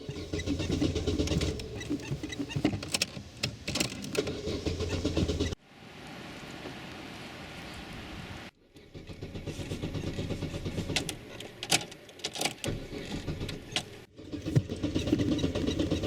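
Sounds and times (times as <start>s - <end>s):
car starter cranking: 0.0s - 5.6s.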